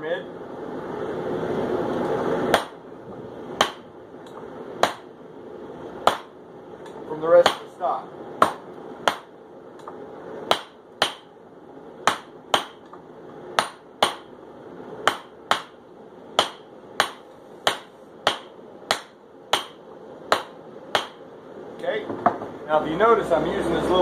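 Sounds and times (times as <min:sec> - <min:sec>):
hammer striking steel on anvil: 0:13.6 - 0:14.3, 0:16.4 - 0:21.2.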